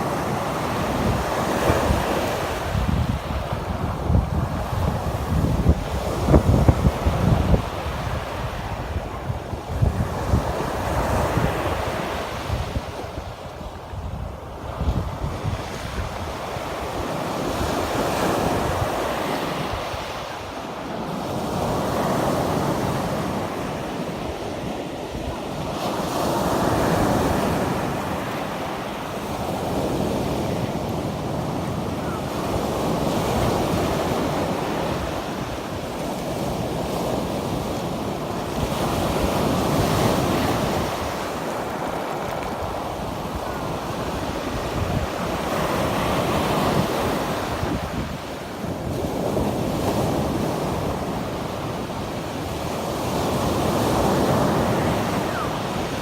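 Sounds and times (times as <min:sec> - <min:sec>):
wind buffeting microphone: 0:00.0 - 0:20.4, 0:21.4 - 0:56.0
waves breaking: 0:15.1 - 0:56.0.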